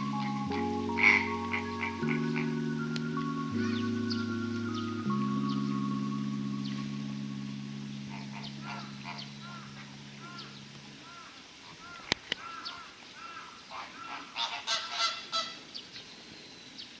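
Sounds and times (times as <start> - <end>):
background music: 0.0 - 11.0
flamingos calling: 0.0 - 12.6.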